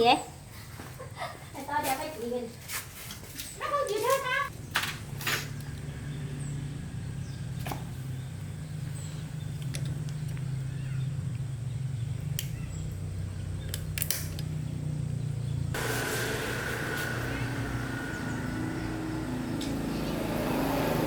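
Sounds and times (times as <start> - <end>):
machine humming: 15.7 - 21.0.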